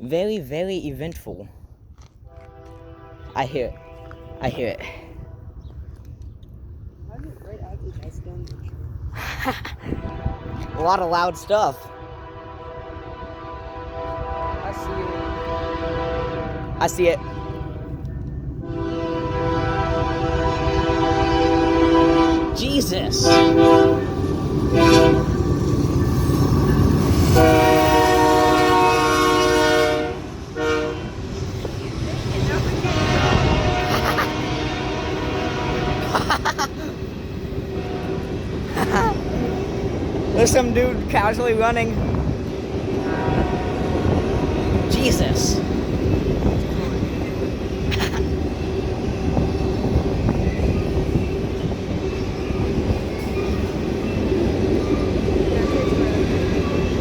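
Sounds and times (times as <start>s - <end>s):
train rumbling by: 0.0s - 57.0s
train air horn chord: 2.3s - 5.5s, 10.0s - 11.0s, 11.9s - 17.9s, 18.6s - 25.4s, 27.3s - 31.2s, 32.8s - 36.1s, 43.0s - 45.5s.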